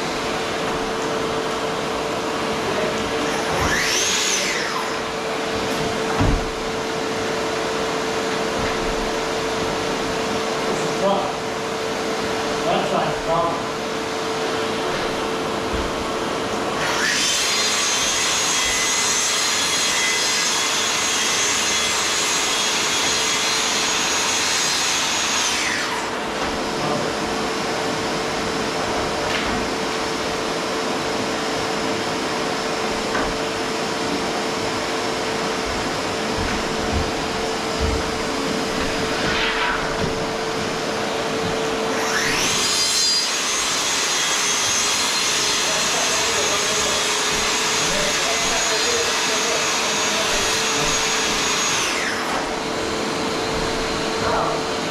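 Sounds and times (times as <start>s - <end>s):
track saw cutting plywood: 2.8s - 7.1s, 16.8s - 28.1s, 32.1s - 54.9s
steady machine hum: 20.8s - 42.6s.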